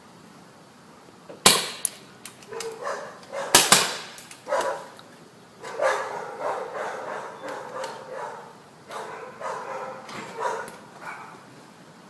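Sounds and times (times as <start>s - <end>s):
paintball gun shots: 1.4s - 2.0s, 3.5s - 4.4s
dog barking: 2.5s - 3.6s, 4.5s - 5.0s, 5.6s - 11.4s.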